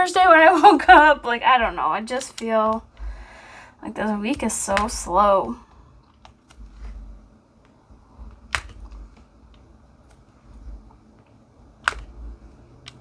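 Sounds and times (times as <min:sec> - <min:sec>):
sharp plastic clicks: 0:02.1 - 0:03.1, 0:04.3 - 0:05.1, 0:07.6 - 0:10.2, 0:11.2 - 0:13.0.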